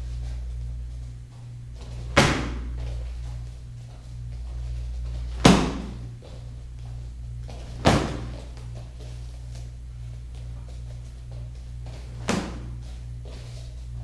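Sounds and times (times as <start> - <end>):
steady low hum: 0.0 - 14.0
kicks slapping a kick target: 2.0 - 2.8, 5.3 - 6.0, 7.6 - 8.6, 12.1 - 12.8.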